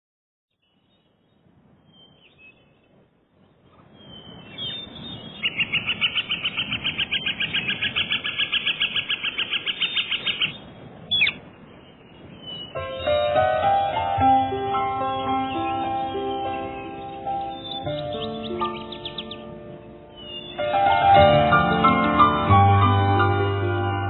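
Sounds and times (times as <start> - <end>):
bird chirping rapidly: 1.8 - 2.9, 3.7 - 13.4, 15.0 - 20.8.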